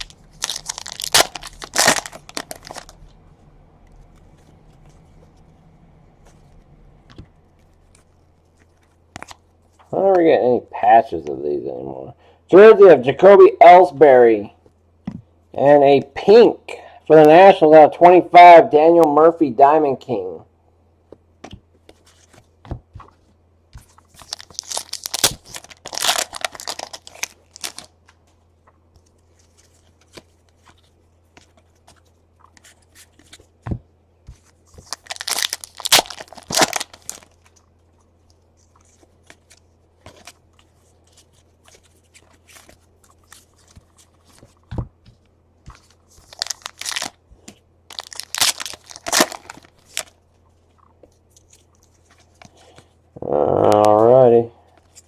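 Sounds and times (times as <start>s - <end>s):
card pack wrappers tearing: 0.0s - 3.0s, 23.8s - 27.9s, 34.4s - 37.6s, 45.8s - 47.2s, 47.9s - 50.2s.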